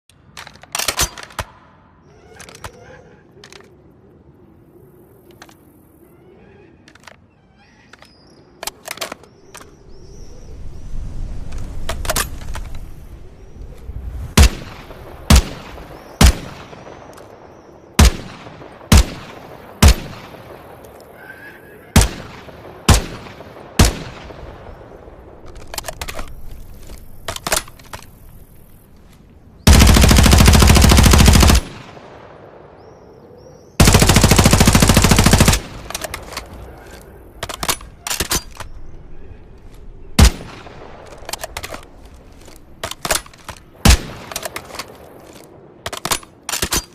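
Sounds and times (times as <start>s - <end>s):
submachine gun firing: 29.7s - 32.0s, 33.8s - 36.4s.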